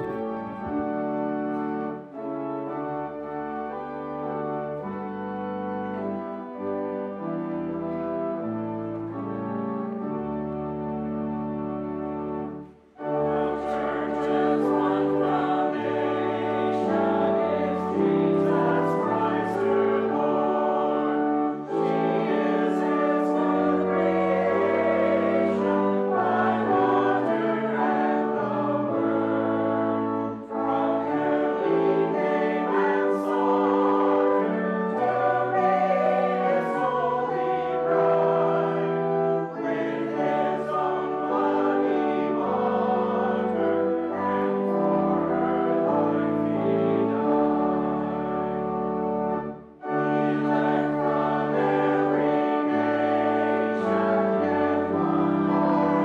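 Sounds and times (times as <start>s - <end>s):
congregation singing a hymn: 0.0s - 56.0s
instrumental accompaniment: 0.0s - 56.0s.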